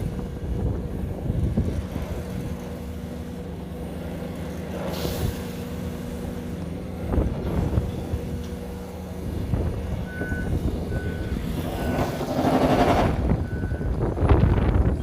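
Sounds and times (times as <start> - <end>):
construction machinery engine hum: 0.0 - 15.0
short hiss: 4.9 - 5.7.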